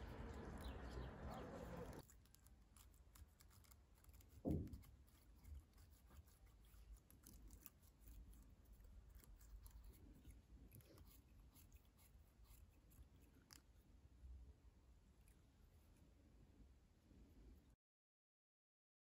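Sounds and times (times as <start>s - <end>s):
birds chirping: 0.0s - 2.0s
soft thud: 4.4s - 4.9s.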